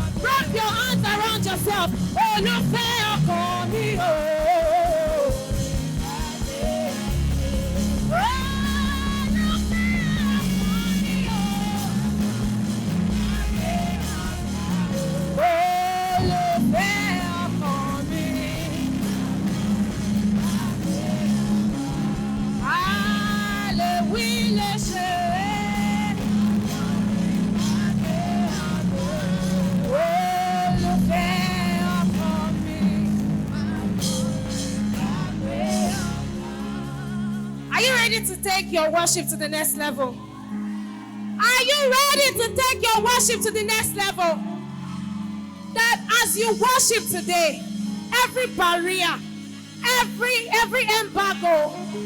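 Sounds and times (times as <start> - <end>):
band playing slow song: 0.0 - 38.4.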